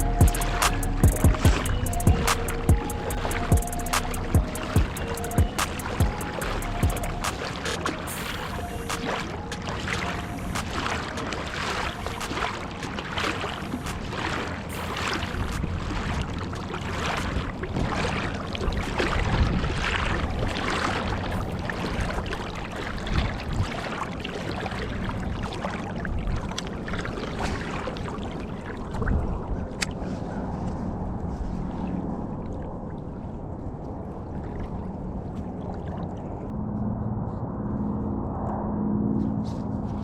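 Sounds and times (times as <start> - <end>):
low steady rumble: 0.0 - 5.6
river water lapping and splashing: 0.0 - 36.9.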